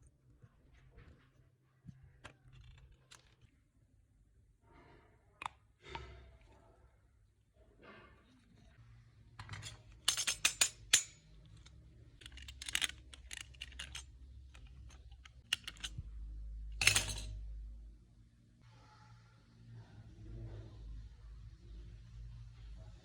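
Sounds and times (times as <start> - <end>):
small hard parts clattering: 9.4 - 16.0, 16.8 - 17.4.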